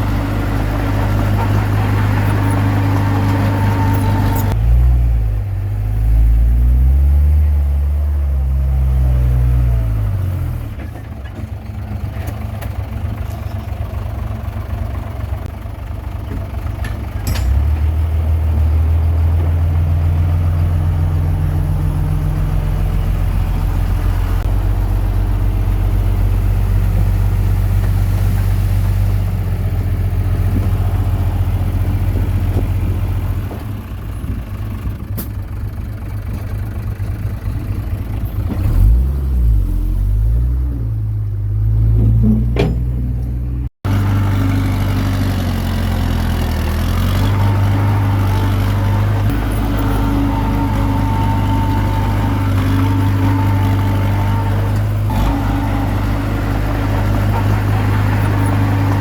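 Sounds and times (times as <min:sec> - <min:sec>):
bulldozer diesel engine working: 0:00.0 - 0:59.0.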